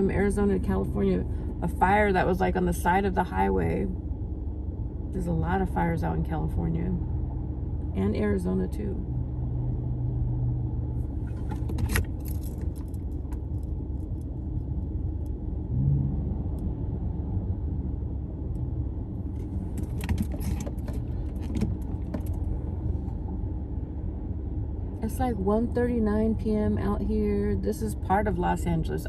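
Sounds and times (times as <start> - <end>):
car cabin road rumble: 0.0 - 29.0
jingling rattles: 11.5 - 14.1.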